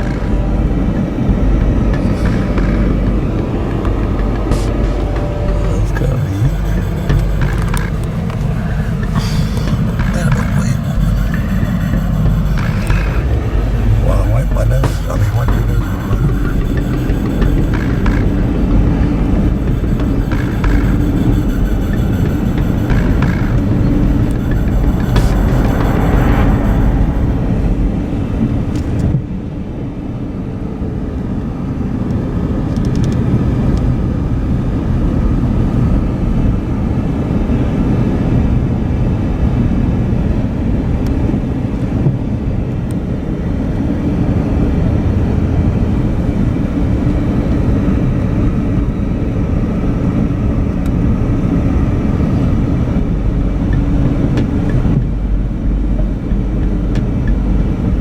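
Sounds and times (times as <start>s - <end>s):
car engine and road noise: 10.8s - 14.8s.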